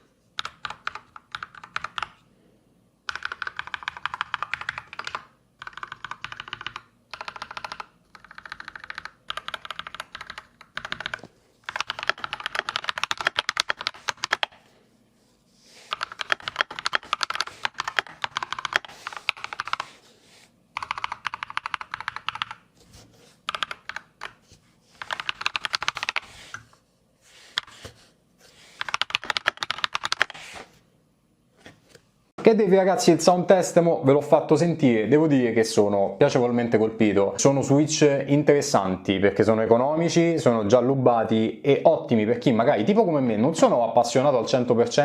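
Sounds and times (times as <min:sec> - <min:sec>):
mechanical keyboard typing: 0:00.4 - 0:02.2, 0:03.1 - 0:14.6, 0:15.9 - 0:20.0, 0:20.8 - 0:22.7, 0:23.4 - 0:24.4, 0:25.0 - 0:26.3, 0:28.7 - 0:30.4.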